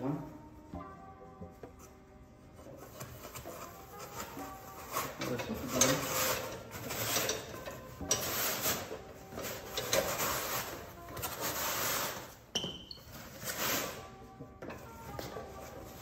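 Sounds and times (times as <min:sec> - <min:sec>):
cloth rubbing and rustling: 0:08.2 - 0:12.4.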